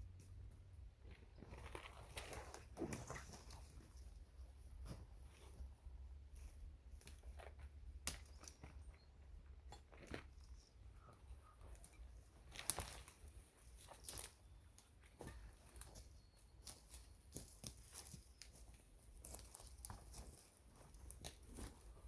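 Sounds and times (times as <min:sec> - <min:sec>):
camping gear rustling and clicking: 0:01.0 - 0:22.0.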